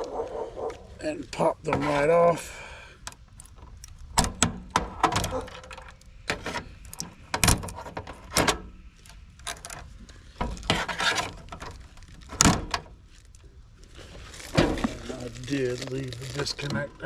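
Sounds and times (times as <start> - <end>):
connectors clicking and snapping: 3.0 - 13.4.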